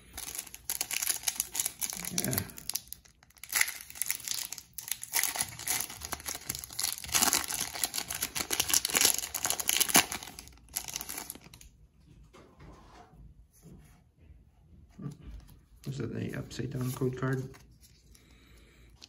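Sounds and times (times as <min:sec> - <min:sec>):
foil wrapper crinkling: 0:00.0 - 0:11.6.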